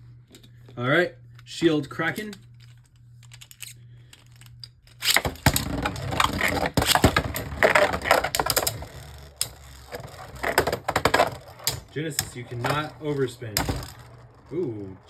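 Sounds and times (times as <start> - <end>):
spinning tops clattering: 3.3 - 15.0
spinning tops launched: 5.0 - 15.0.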